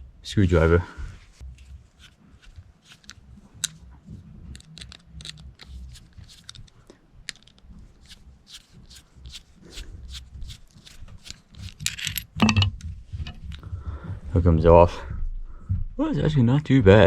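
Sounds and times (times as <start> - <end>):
metal parts clicking and scraping: 4.5 - 9.4, 10.8 - 13.5.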